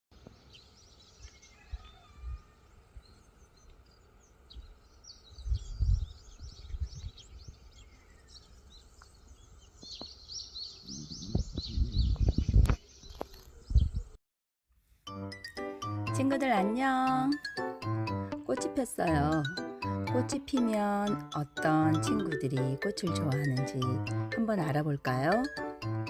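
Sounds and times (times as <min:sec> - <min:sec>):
small birds chirping: 0:00.2 - 0:14.2
low rumbling gusts: 0:11.0 - 0:12.7.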